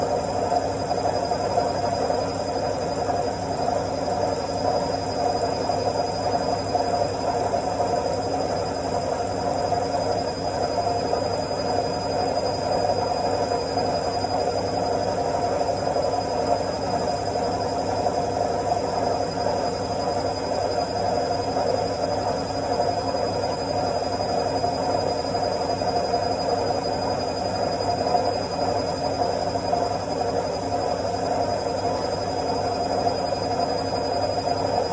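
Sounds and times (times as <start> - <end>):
washing machine spinning: 0.0 - 34.9.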